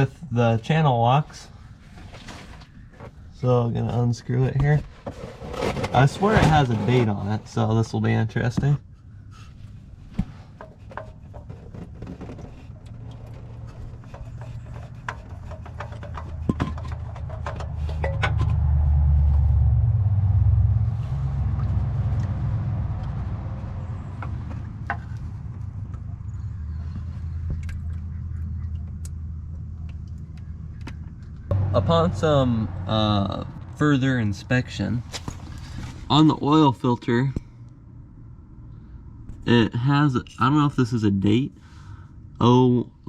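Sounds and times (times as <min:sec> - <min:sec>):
oil filter clicks and knocks: 0:10.2 - 0:18.7, 0:23.8 - 0:26.1
low rumble: 0:12.2 - 0:39.5.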